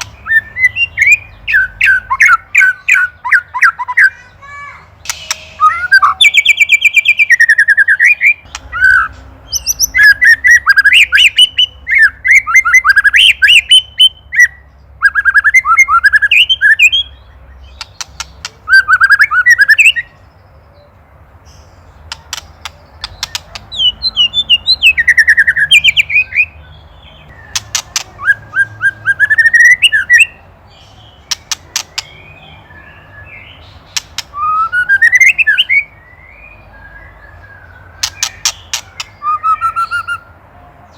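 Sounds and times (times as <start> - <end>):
sharp clicking bird notes: 0.0 - 4.1, 5.0 - 11.7, 17.6 - 20.2, 21.9 - 26.4, 27.3 - 30.3, 31.1 - 32.4, 33.7 - 35.8, 37.8 - 40.2.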